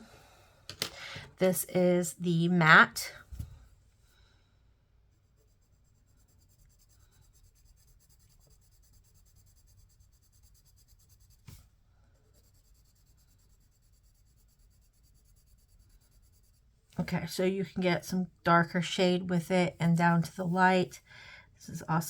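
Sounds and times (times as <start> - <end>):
pencil scratching on paper: 5.1 - 16.7.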